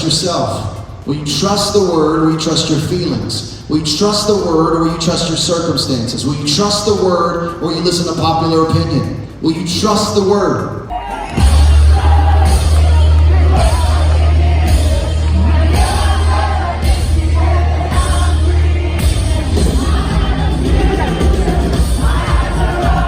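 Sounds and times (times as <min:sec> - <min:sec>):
heavy bass beat: 0:00.0 - 0:23.0
music with singing: 0:10.5 - 0:23.0.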